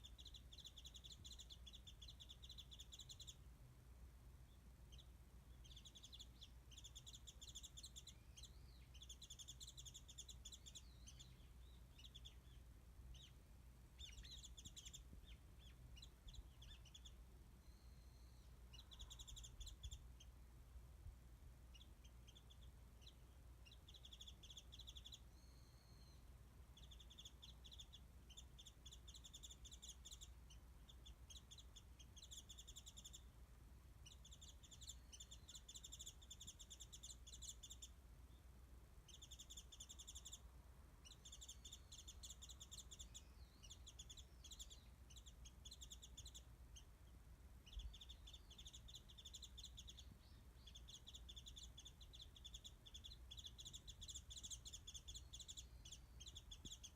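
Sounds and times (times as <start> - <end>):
bird twittering: 14.0 - 20.0, 34.0 - 37.9, 39.1 - 40.4, 41.0 - 46.9, 47.6 - 56.9.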